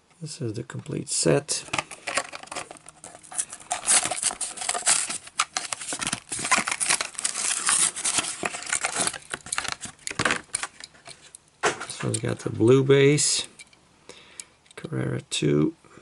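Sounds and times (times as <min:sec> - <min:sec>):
plastic packaging crinkling and tearing: 0:01.6 - 0:10.9.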